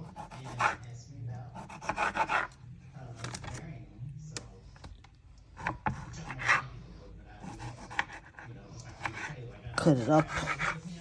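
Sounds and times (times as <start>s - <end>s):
knife scraping: 1.6s - 2.6s, 5.6s - 6.7s, 7.4s - 11.0s.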